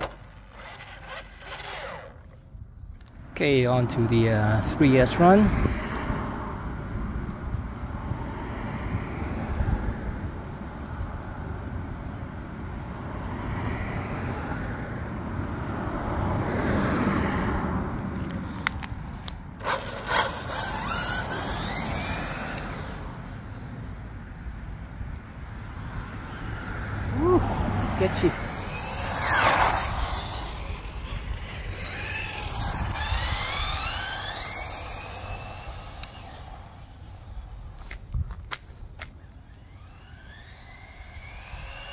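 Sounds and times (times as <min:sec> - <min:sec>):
toy car motor whining: 0:00.0 - 0:02.5, 0:19.6 - 0:23.1, 0:28.0 - 0:37.4, 0:39.2 - 0:41.9
outdoor rumble: 0:00.0 - 0:13.6, 0:14.2 - 0:41.9.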